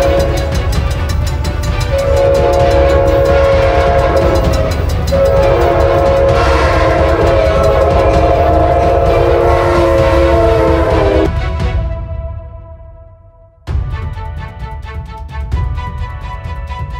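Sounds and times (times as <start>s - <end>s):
train rumbling: 0.0s - 12.2s
train horn blasts: 0.0s - 13.0s.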